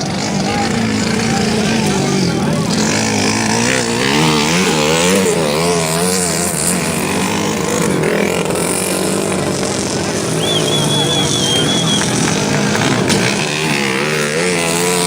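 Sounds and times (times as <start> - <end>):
motorcycle engines revving: 0.0 - 15.0
short high whistle: 10.4 - 12.3.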